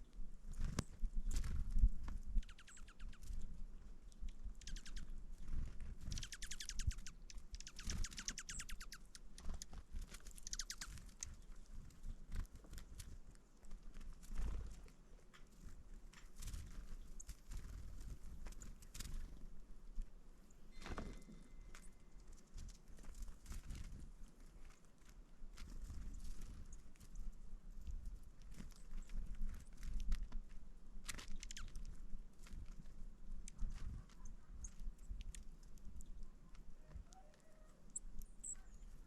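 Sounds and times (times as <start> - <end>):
bird clicking chatter: 2.4 - 3.2, 4.3 - 5.1, 6.1 - 11.4, 31.0 - 31.8.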